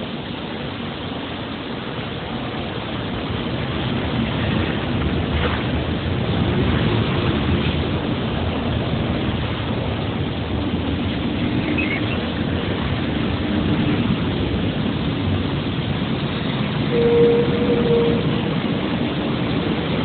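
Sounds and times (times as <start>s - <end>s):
train rumble: 0.0s - 20.0s
brief higher tone: 16.9s - 18.3s.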